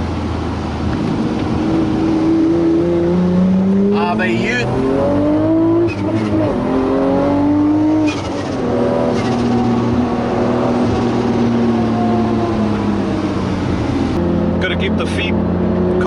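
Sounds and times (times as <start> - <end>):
car engine revving and shifting: 0.0 - 16.0.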